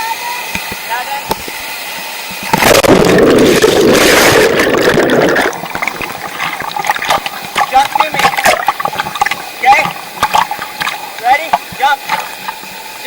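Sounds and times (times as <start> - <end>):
waterfall rushing: 2.5 - 12.6.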